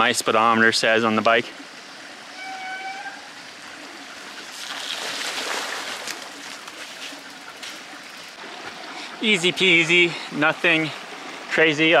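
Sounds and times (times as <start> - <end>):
creek water rushing: 0.0 - 12.0.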